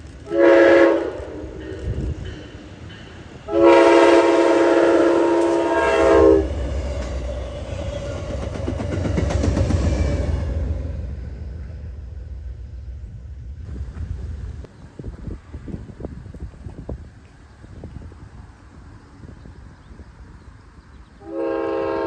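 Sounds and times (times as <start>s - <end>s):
low rumble of train: 0.0s - 22.0s
locomotive horn blasts: 0.2s - 2.2s, 3.5s - 6.8s, 21.2s - 22.0s.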